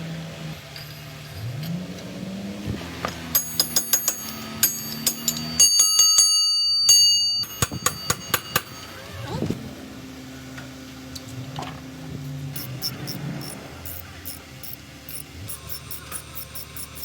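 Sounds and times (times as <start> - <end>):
hammer blows on steel: 3.0 - 9.1.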